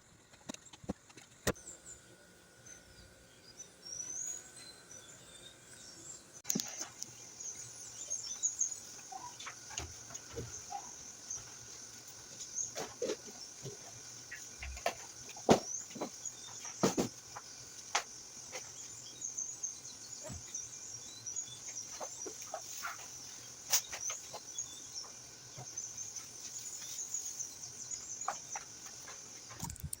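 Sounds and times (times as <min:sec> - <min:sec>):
insects chirring: 0:00.0 - 0:30.0.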